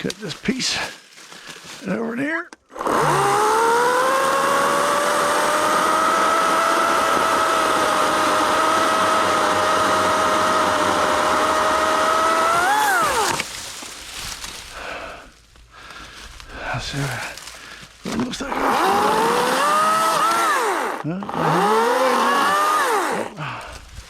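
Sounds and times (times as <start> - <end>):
battery chainsaw motor whine: 2.7 - 13.6, 18.1 - 23.6.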